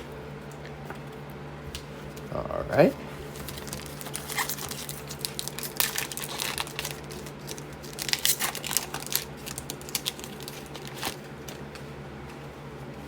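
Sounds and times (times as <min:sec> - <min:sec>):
card pack wrapper crinkling and tearing: 0:03.3 - 0:11.2.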